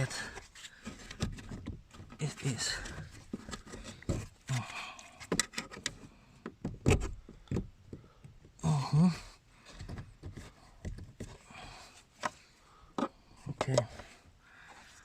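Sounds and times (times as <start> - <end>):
plastic and metal parts clicking: 5.0 - 6.1
person grunting: 8.6 - 9.3.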